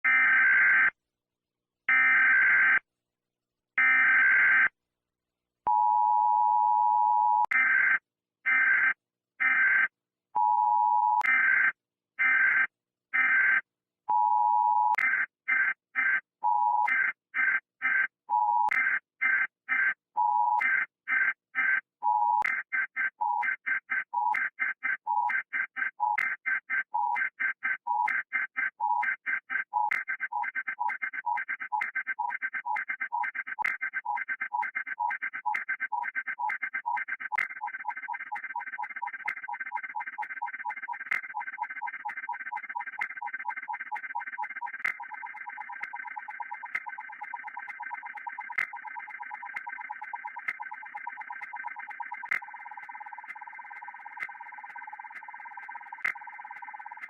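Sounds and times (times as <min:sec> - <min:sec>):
digital data bursts: 0:29.9 - 0:57.0.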